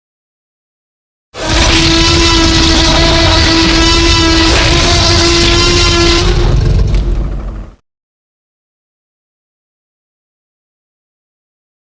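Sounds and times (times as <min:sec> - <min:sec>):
horn-like tone: 0:01.4 - 0:06.7
heavy rumble: 0:01.4 - 0:07.8.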